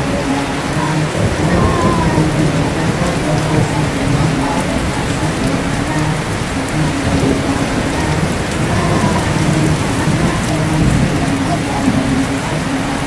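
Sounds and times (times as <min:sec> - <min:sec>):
heavy rain falling: 0:00.0 - 0:13.0
low rumble of thunder: 0:00.0 - 0:13.0.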